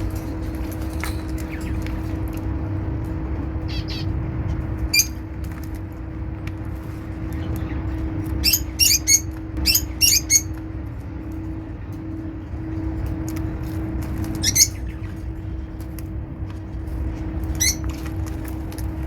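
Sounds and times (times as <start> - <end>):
low hum and rumble: 0.0 - 19.0
lovebirds shrill chirps: 3.6 - 4.2, 4.8 - 5.2, 7.3 - 10.6, 14.2 - 15.2, 17.4 - 18.1.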